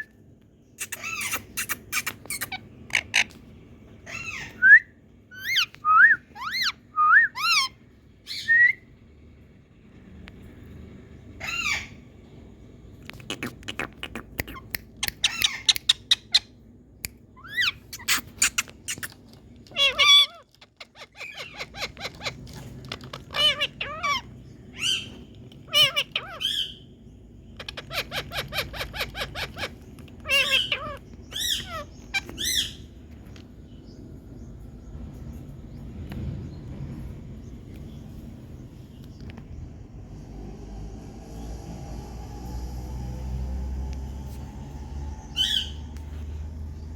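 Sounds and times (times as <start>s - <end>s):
parakeets calling: 0.6s - 4.7s, 5.3s - 8.6s, 11.3s - 12.1s, 13.1s - 16.7s, 17.3s - 35.9s, 44.0s - 46.9s.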